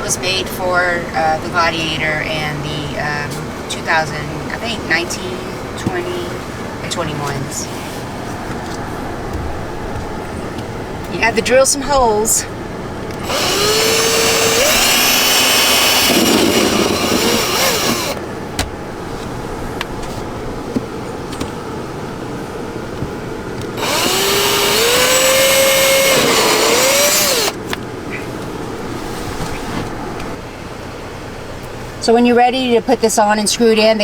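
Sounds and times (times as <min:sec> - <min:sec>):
power drill drilling: 0:13.2 - 0:18.2, 0:23.8 - 0:27.6.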